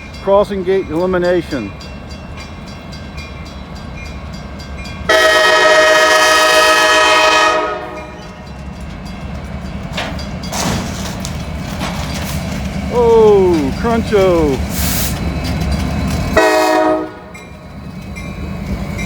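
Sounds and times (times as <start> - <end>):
locomotive rumbling: 0.0 - 19.0
train air horn: 5.1 - 8.2, 16.4 - 17.3.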